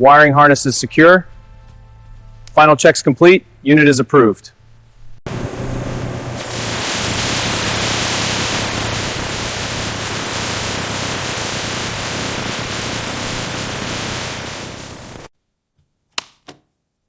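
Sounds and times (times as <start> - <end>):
low hum: 4.5 - 15.3
loud steady hissing: 5.3 - 15.3.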